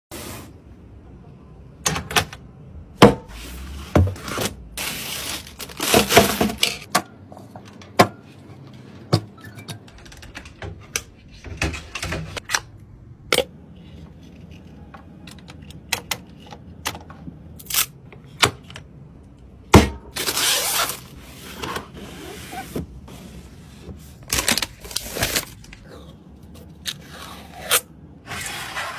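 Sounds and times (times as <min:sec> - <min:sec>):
computer parts clicking and knocking: 0:09.0 - 0:12.8.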